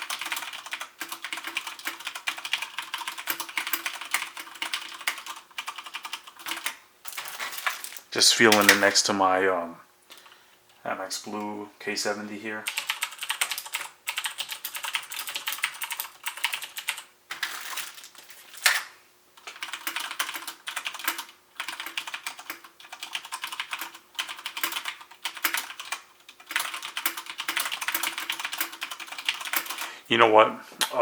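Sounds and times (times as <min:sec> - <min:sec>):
typing on mechanical keyboard: 0:00.0 - 0:07.8, 0:12.7 - 0:18.2, 0:19.4 - 0:29.9.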